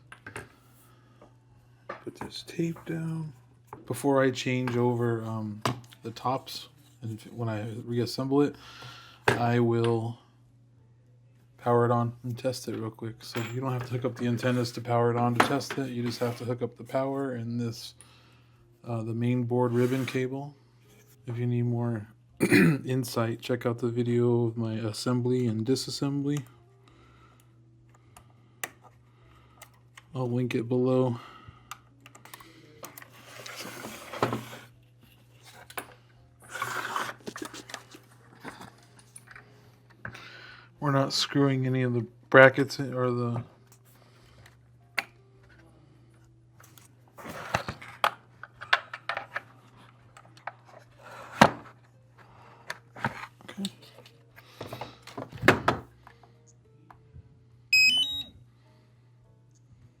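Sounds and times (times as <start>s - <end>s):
rising electronic beep tones: 57.8s - 58.3s.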